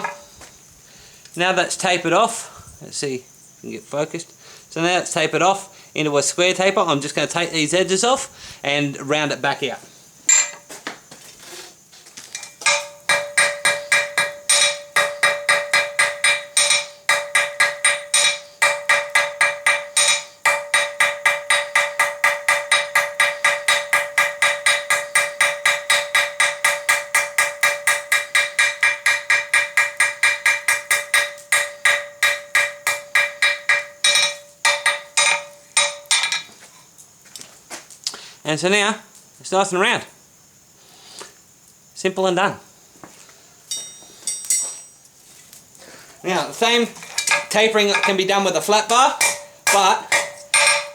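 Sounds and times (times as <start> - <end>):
hammer striking metal on anvil: 0.0 - 0.3, 10.3 - 10.6, 12.4 - 36.5, 47.0 - 50.9.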